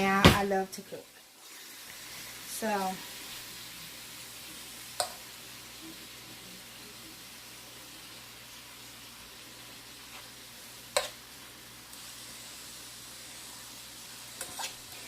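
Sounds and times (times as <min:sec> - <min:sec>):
steak sizzling in a pan: 0:00.0 - 0:15.0.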